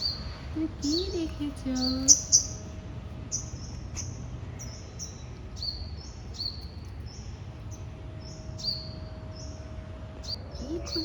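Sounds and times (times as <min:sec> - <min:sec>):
low background rumble: 0:00.0 - 0:11.0
small animal chirping: 0:01.8 - 0:02.6.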